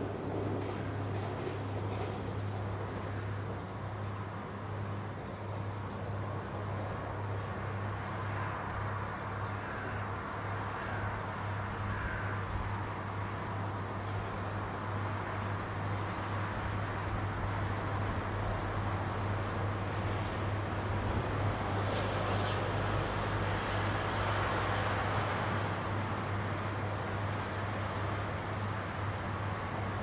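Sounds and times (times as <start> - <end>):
crow-like bird calls: 8.2 - 8.6, 9.4 - 12.5.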